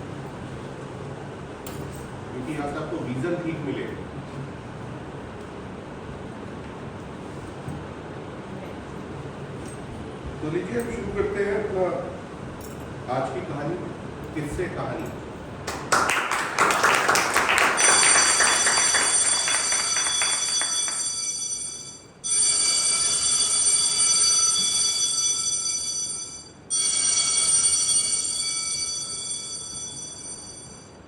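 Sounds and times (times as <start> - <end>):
audience applauding: 15.7 - 21.1
electric bell ringing: 16.9 - 31.0.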